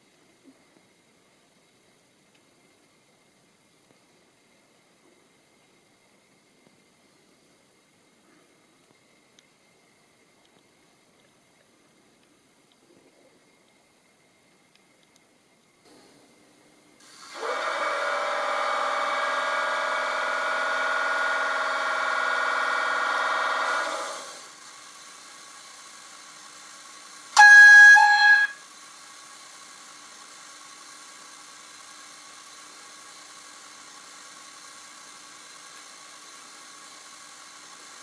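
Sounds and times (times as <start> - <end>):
faint steady hum: 0.0 - 38.0
loud multi-tone sound: 27.4 - 28.6
two-tone train horn: 27.4 - 28.6.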